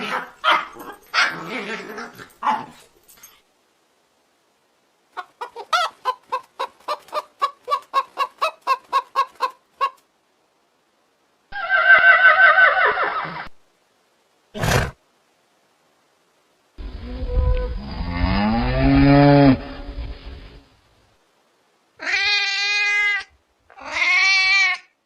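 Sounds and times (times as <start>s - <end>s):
chicken clucking: 5.1s - 10.0s
chicken drawn-out call: 5.2s - 10.0s, 11.5s - 13.5s.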